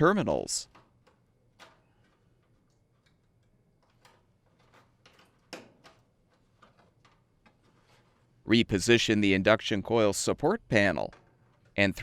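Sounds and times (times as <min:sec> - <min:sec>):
wire connectors clicking: 0:00.6 - 0:07.6.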